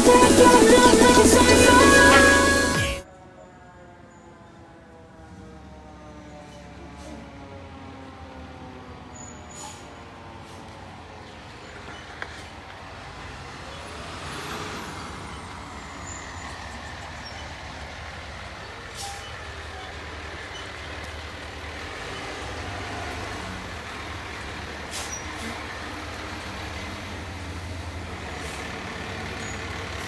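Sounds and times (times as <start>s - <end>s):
diesel engine idling: 0.0s - 3.0s, 11.2s - 30.0s.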